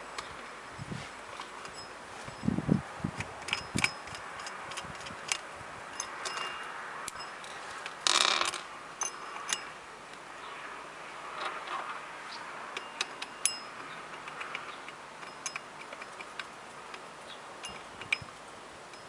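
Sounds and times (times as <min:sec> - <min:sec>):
sharp metallic clicks: 0:03.2 - 0:10.2, 0:12.7 - 0:18.3.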